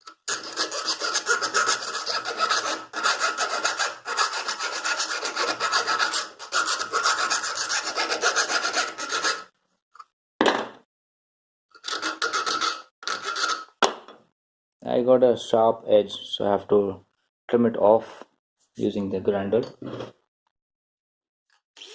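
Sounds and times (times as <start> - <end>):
file rasping inside metal pipe: 0.0 - 9.5, 11.8 - 13.7.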